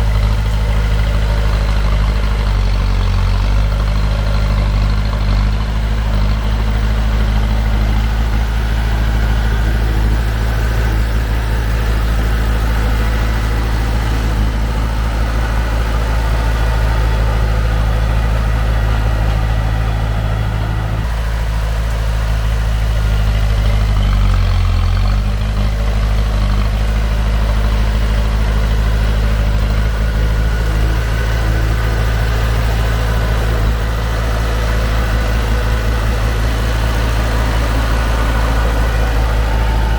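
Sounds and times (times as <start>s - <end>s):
heavy diesel engine running: 0.0s - 39.9s.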